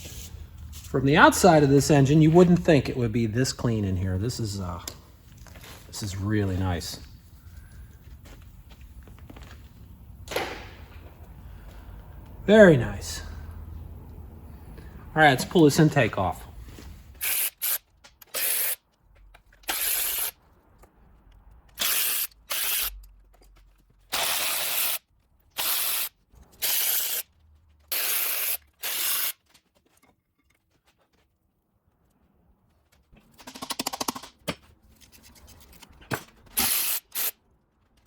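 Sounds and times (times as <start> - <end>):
power ratchet running in bursts: 19.7 - 20.3, 21.8 - 22.9.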